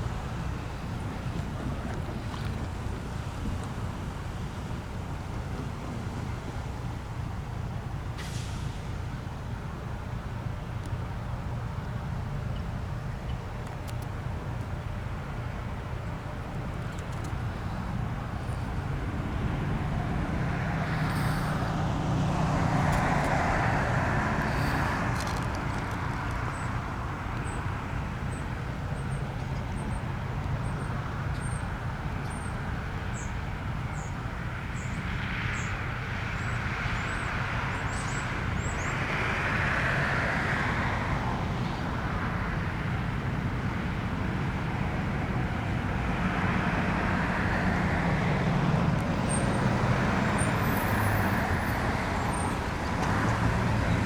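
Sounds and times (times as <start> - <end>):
low traffic rumble: 0.0 - 54.0
cars passing: 13.9 - 29.1, 34.3 - 54.0.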